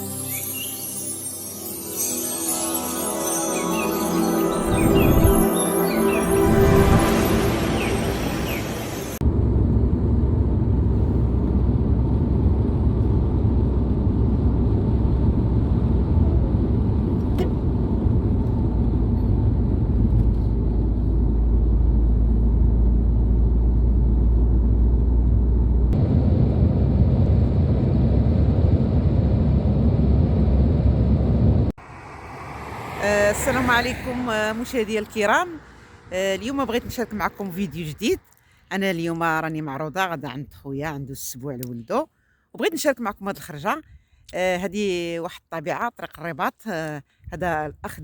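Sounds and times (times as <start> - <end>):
car engine and road noise: 3.5 - 38.4.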